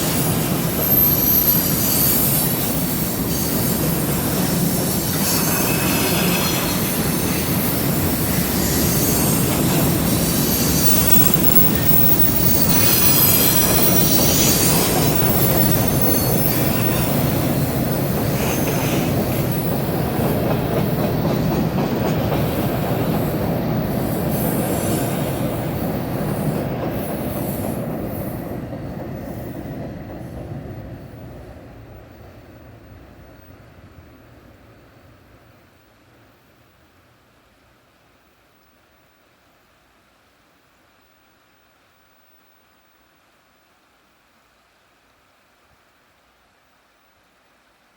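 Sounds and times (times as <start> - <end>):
train wheels rumbling and squealing: 0.0 - 32.6.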